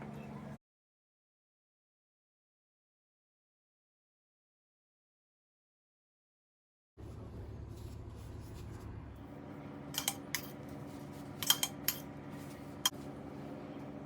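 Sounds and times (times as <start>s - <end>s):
steady low hum: 7.0s - 14.0s.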